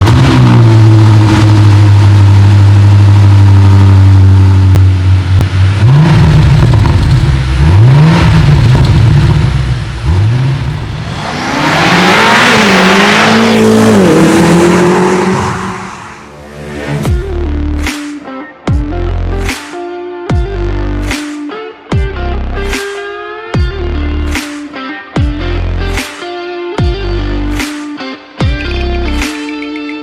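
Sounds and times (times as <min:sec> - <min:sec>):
engine revving with exhaust rasp: 0:00.0 - 0:17.2
car engine idling: 0:00.6 - 0:15.4.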